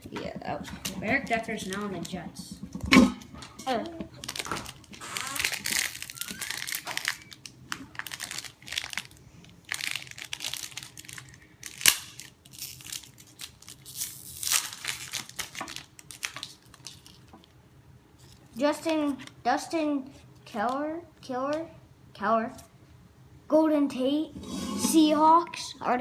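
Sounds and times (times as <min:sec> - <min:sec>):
trading cards rustling: 0:00.7 - 0:02.8, 0:03.6 - 0:09.2.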